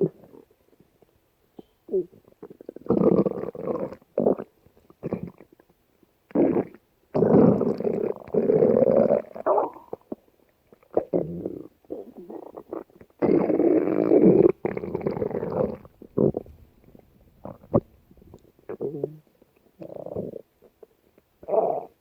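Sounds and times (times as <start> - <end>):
stomach growling: 6.3 - 22.0.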